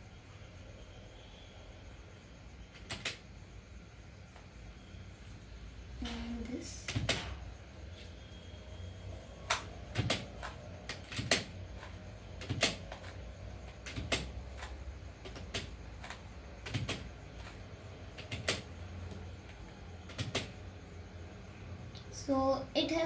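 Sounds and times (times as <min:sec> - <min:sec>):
puzzle cube turning clacks: 0:09.4 - 0:20.6.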